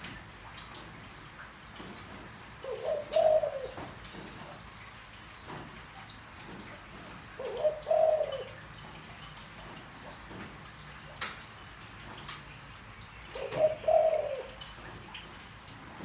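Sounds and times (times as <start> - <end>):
dove cooing: 2.6 - 4.0, 7.3 - 8.8, 13.3 - 15.0.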